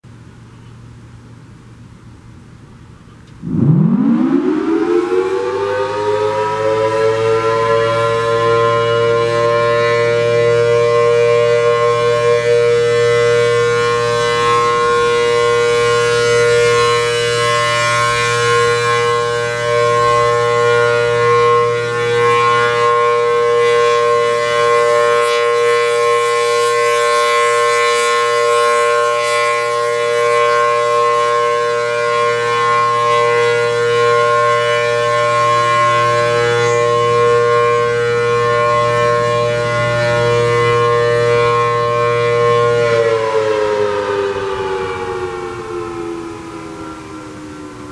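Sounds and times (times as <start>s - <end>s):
low hum: 3.1s - 16.0s
warning siren two-tone chord: 3.3s - 47.9s.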